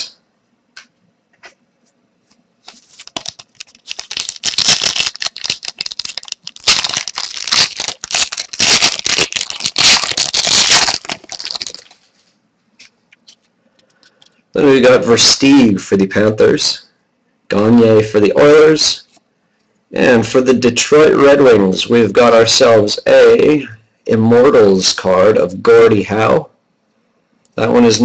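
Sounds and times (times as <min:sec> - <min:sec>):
wrapper crinkling and tearing: 0:02.6 - 0:12.1.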